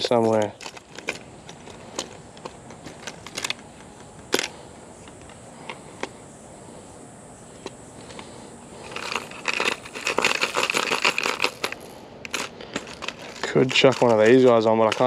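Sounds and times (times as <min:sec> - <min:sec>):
tackle rattling in a box: 0:08.8 - 0:15.0.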